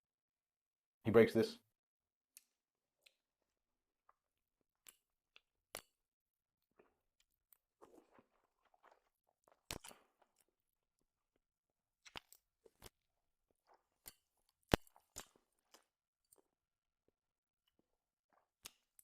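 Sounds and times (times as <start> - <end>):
person crunching and chewing food: 6.6 - 16.6, 17.7 - 19.0.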